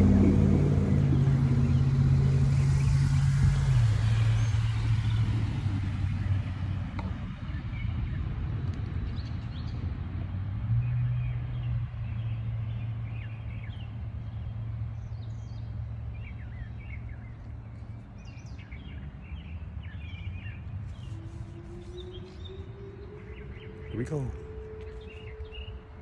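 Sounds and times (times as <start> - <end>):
steady low hum: 0.0 - 10.7, 11.3 - 26.0
low outdoor rumble: 0.0 - 26.0
birds chirping: 10.8 - 26.0.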